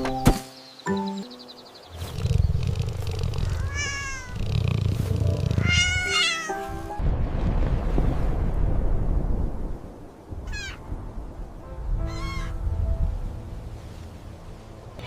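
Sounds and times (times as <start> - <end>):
cat meowing: 3.4 - 4.4, 5.6 - 6.7, 10.4 - 10.8, 12.1 - 12.6.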